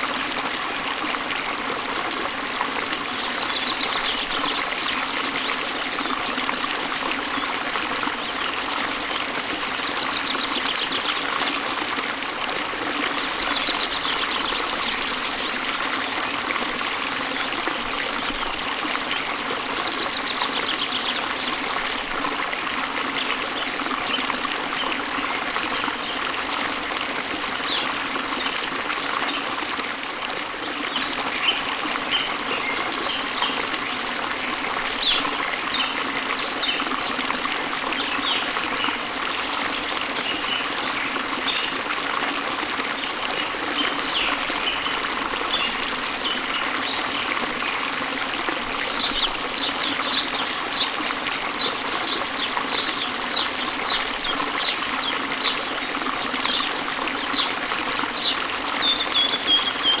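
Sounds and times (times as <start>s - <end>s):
waterfall: 0.0s - 60.0s
birds chirping: 56.2s - 60.0s.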